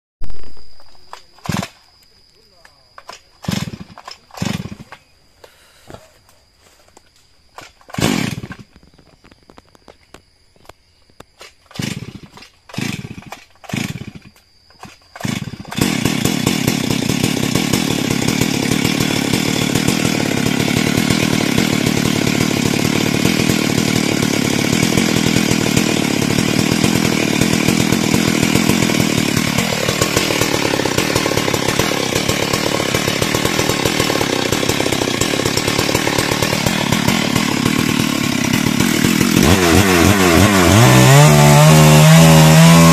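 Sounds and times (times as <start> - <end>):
chainsaw cutting wood: 1.1 - 1.8, 3.4 - 4.9, 7.6 - 8.8, 11.4 - 42.9
chainsaw starting and running: 1.4 - 1.8, 3.4 - 4.9, 7.6 - 8.7, 11.7 - 42.9.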